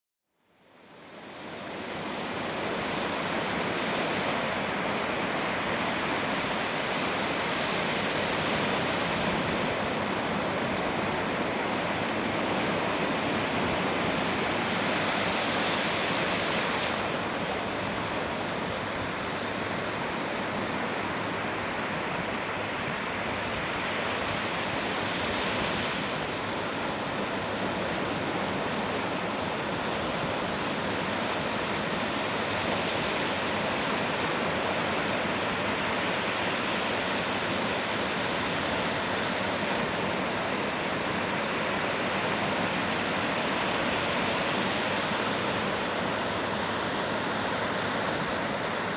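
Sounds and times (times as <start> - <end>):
ocean waves breaking: 1.2 - 48.9.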